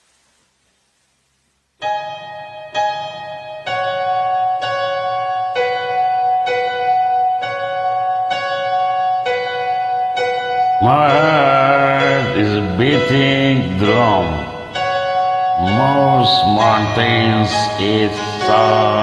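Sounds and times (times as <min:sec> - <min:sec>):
keyboard chords: 0:01.8 - 0:19.0
person singing: 0:10.8 - 0:19.0.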